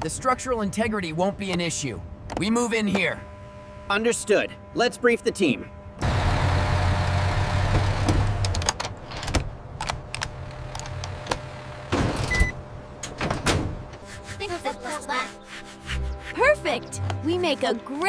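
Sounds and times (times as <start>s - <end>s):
low motor rumble: 5.7s - 14.0s.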